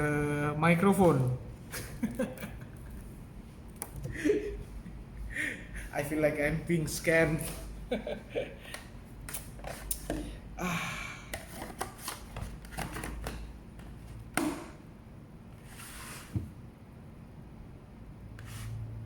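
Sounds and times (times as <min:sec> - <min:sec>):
box and packaging handled: 0:11.3 - 0:14.1.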